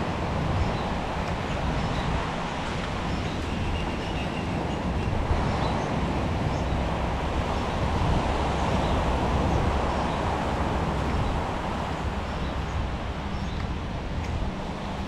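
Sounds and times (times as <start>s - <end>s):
low outdoor rumble: 4.9s - 15.0s.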